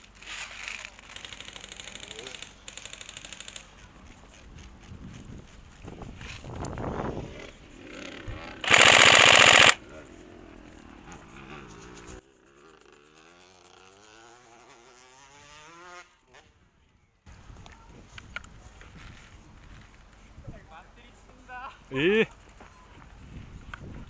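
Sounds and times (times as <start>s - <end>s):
airsoft rifle full-auto burst: 8.6s - 9.8s.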